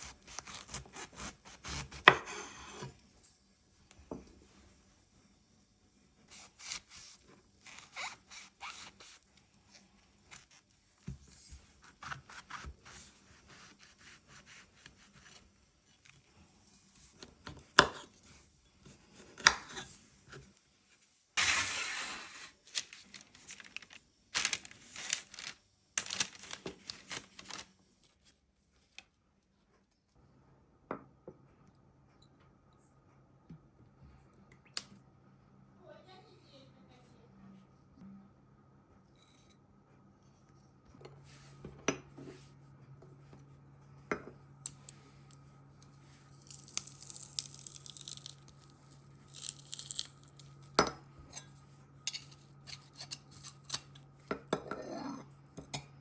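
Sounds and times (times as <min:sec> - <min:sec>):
scraping and tearing food on board: 0:45.9 - 0:50.7.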